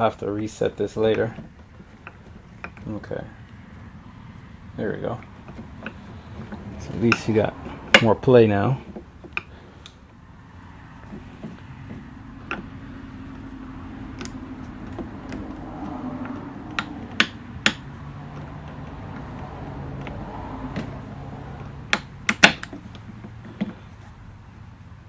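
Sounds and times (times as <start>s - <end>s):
low steady hum: 0.0s - 25.0s
hand tool clicks and taps: 14.1s - 20.9s, 21.9s - 23.0s.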